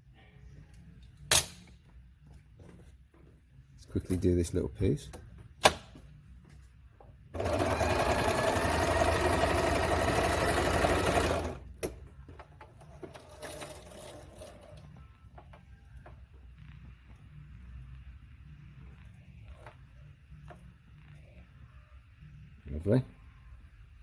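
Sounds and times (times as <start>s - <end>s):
sewing machine running fast: 7.4s - 11.6s.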